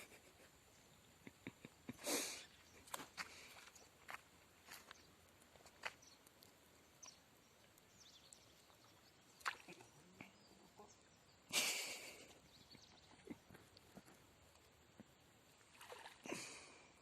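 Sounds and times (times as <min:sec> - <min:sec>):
faint bird chirps: 0:05.8 - 0:11.5, 0:12.1 - 0:13.6.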